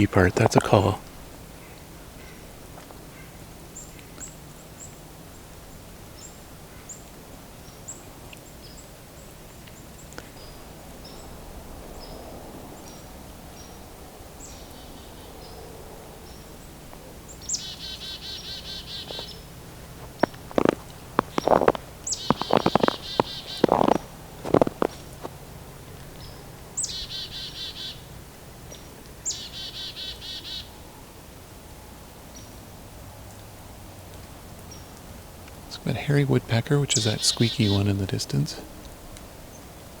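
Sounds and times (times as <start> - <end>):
chickadees calling: 17.2 - 25.3, 36.1 - 38.6.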